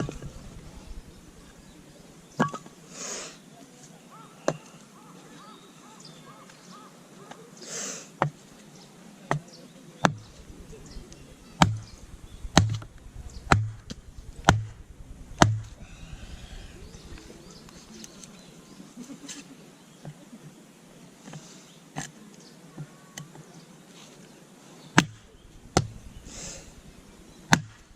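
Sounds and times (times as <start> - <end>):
firewood splitting strikes: 10.1 - 16.0, 25.0 - 27.9.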